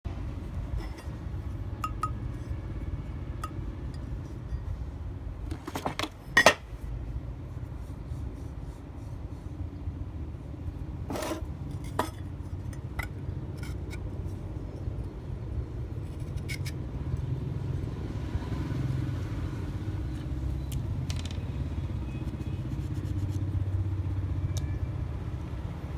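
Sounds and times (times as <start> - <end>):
low steady hum: 0.1 - 18.2
clinks of hard objects handled: 0.7 - 1.2, 1.8 - 2.5, 3.4 - 4.7.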